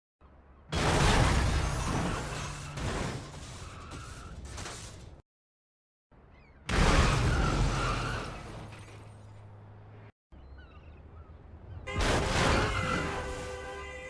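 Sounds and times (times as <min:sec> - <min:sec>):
car crash with smashing glass: 0:00.8 - 0:05.1, 0:06.7 - 0:09.4, 0:11.9 - 0:13.6
car horn blaring: 0:11.9 - 0:14.0.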